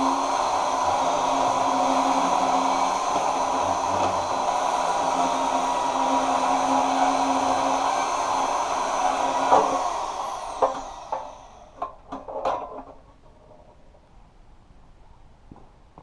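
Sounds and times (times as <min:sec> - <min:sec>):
motor spinning down whine: 0:00.0 - 0:11.8
power tool motor running: 0:00.0 - 0:11.8.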